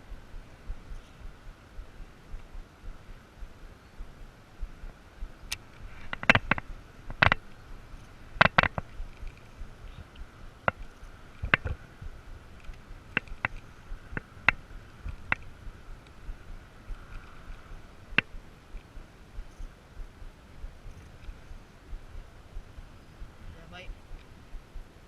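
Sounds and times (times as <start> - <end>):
faint steady hiss: 0.0 - 25.0
sharp clicks and knocks: 5.5 - 7.6, 8.4 - 9.5, 10.1 - 11.8, 12.6 - 20.1.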